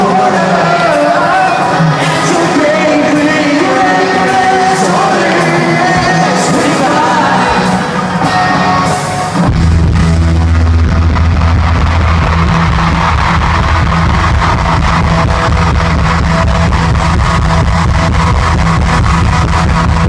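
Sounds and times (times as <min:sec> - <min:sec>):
voices singing: 0:00.0 - 0:08.1
heavy bass and drums: 0:00.0 - 0:20.0
live pop-punk band: 0:00.0 - 0:20.0.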